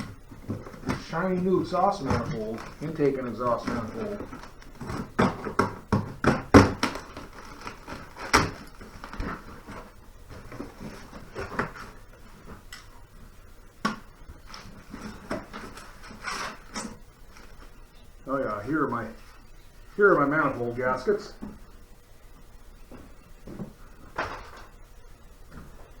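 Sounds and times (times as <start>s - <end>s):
box being unpacked by hand: 0.0s - 12.7s, 13.8s - 17.8s
knocks and scrapes of parts: 0.0s - 12.9s, 13.8s - 17.8s.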